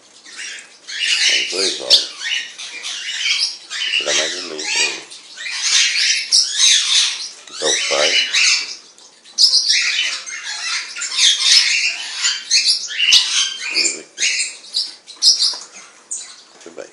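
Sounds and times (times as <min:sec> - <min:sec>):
parrots squawking: 0:00.1 - 0:16.6.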